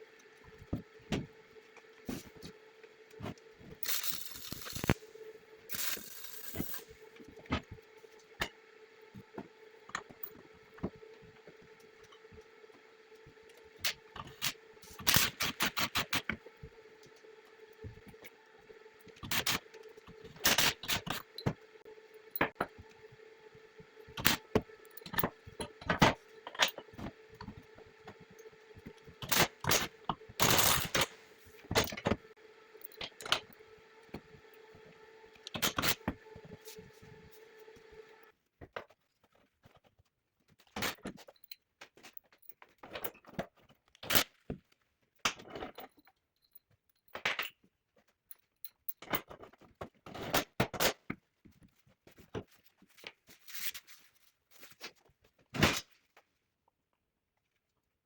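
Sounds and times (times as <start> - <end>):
metal parts clinking and scraping: 3.8 - 5.0, 5.7 - 6.9.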